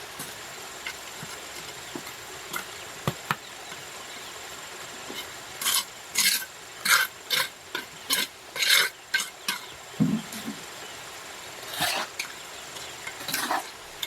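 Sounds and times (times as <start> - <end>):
hand tool scraping hard surface: 5.1 - 10.6, 11.7 - 12.2, 13.1 - 13.8.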